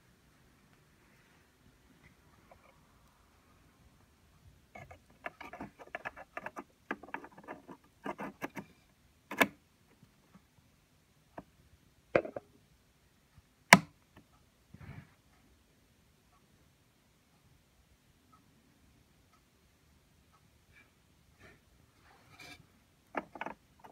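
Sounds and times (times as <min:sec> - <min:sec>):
small clicks and scrapes: 0:04.7 - 0:10.5, 0:20.8 - 0:23.9.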